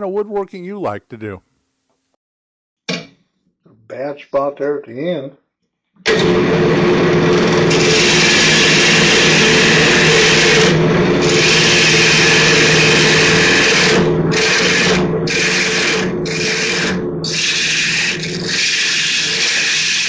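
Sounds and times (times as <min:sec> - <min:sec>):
gouge cutting spinning wood: 0:07.4 - 0:20.0
wood lathe humming: 0:11.3 - 0:20.0.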